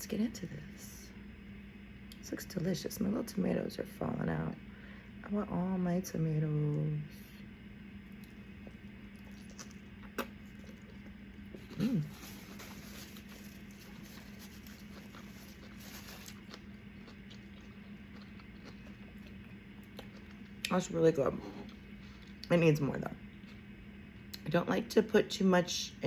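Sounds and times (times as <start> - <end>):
low hum: 0.0 - 26.0
chewing and mouth sounds: 8.1 - 20.8
person humming mm: 11.6 - 12.4.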